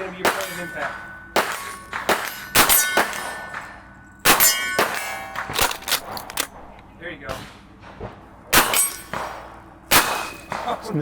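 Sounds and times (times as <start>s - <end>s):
steel targets clanging and ringing: 0.0s - 6.6s, 8.5s - 11.0s
gunshot cracks: 8.5s - 10.8s.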